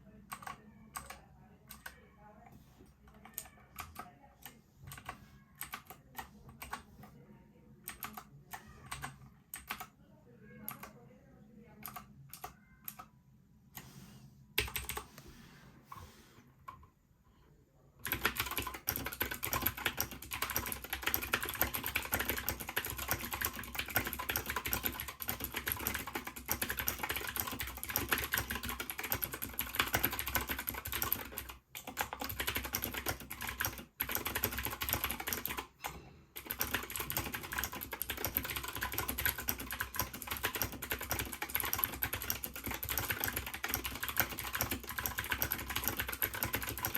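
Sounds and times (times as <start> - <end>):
fast typing on mechanical keyboard: 0.3 - 1.9, 4.9 - 6.8, 7.9 - 9.9, 14.6 - 15.0, 18.0 - 35.8, 36.4 - 46.9.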